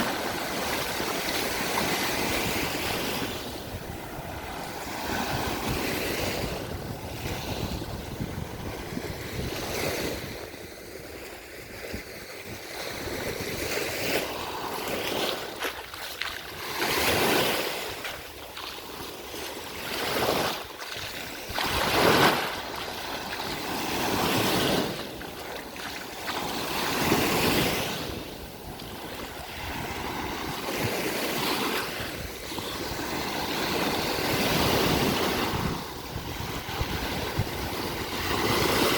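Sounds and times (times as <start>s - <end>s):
sea waves breaking on beach: 0.0s - 38.9s
wind rumbling on microphone: 0.0s - 38.9s.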